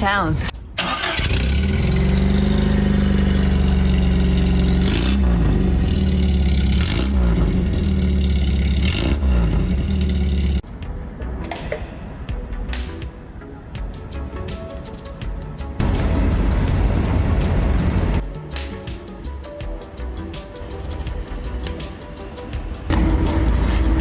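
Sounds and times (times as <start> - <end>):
car engine revving: 0.8 - 10.6, 15.8 - 18.2, 20.9 - 24.0.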